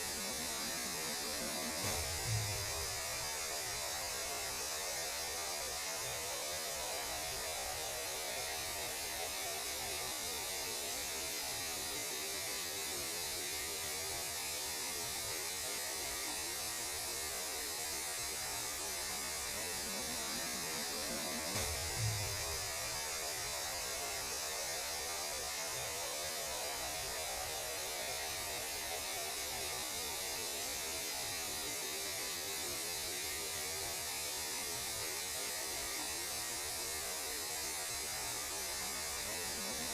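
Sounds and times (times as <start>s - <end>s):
static-like hiss: 0.0s - 39.9s
brief low thump: 1.8s - 2.9s, 21.5s - 22.6s
low hum: 1.8s - 3.2s.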